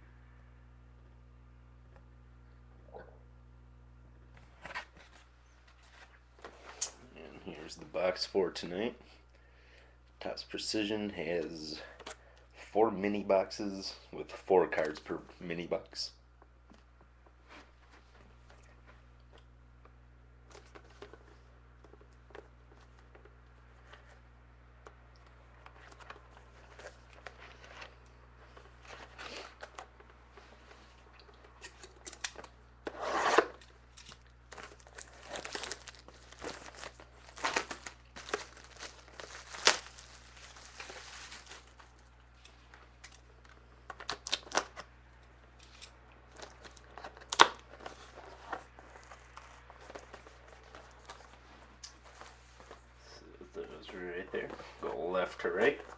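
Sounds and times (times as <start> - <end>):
plastic wrapper tearing: 33.4 - 42.0, 44.0 - 44.8
plastic crinkling: 33.6 - 44.8.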